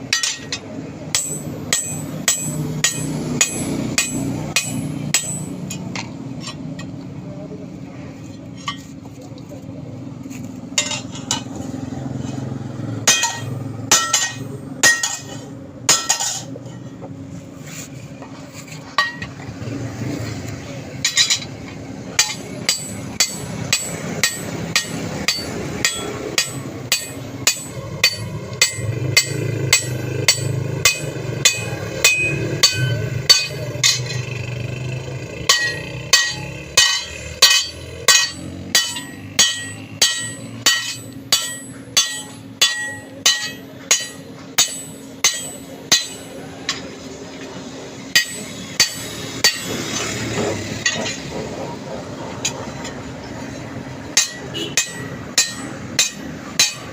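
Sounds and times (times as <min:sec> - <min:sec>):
hammer ringing on steel anvil: 0:00.1 - 0:05.9, 0:13.0 - 0:16.5, 0:22.2 - 0:46.9, 0:48.1 - 0:50.1, 0:50.8 - 0:51.2, 0:54.1 - 0:56.9.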